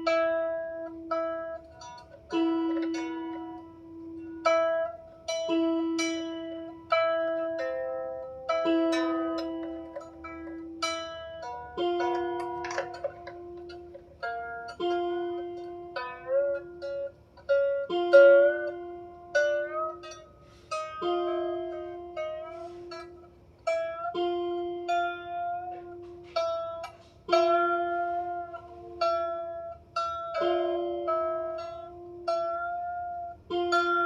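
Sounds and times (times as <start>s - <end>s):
harp strings plucked: 0.0s - 34.0s.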